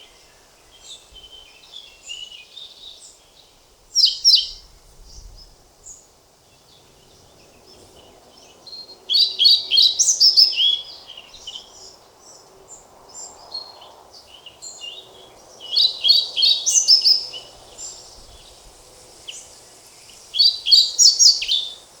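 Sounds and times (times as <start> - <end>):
bird singing chirpy notes: 14.4 - 22.0.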